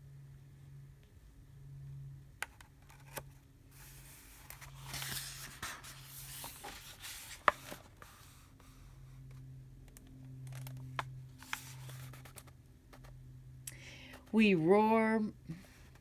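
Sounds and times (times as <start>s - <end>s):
book pages rustling: 2.8s - 9.3s, 10.5s - 13.2s.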